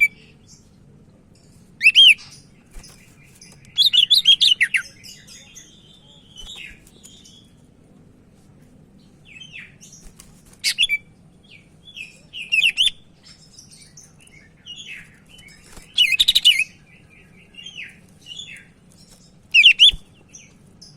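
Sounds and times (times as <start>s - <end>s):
bird chirping and whistling: 1.8s - 2.3s, 12.4s - 13.0s, 19.6s - 20.0s.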